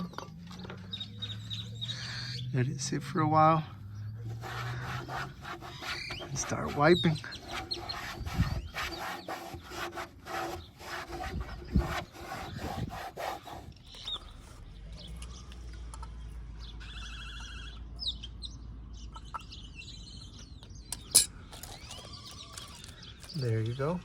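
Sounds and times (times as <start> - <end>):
wiping strokes on glass: 4.2 - 14.1
faint bird chirps: 13.8 - 24.0.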